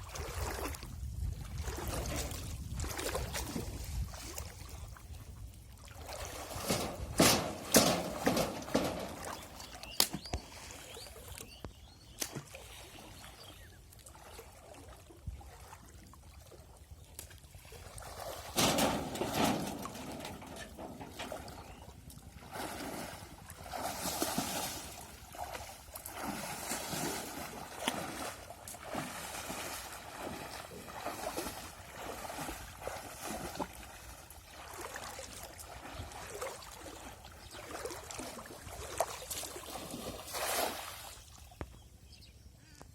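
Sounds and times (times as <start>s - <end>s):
water sloshing and trickling: 0.0s - 41.8s
water splash: 22.4s - 41.3s.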